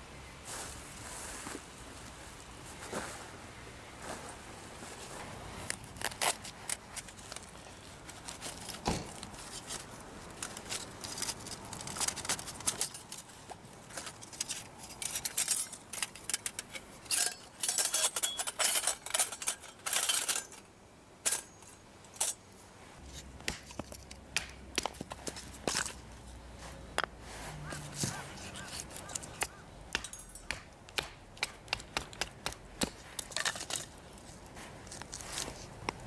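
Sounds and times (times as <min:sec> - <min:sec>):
metallic objects clinking and scraping: 0:08.4 - 0:24.2, 0:27.9 - 0:30.6, 0:32.9 - 0:35.6.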